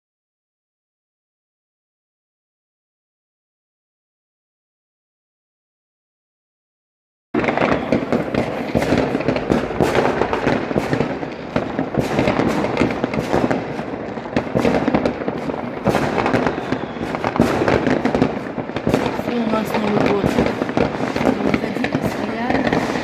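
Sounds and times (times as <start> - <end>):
fireworks bangs and crackles: 7.4 - 23.0.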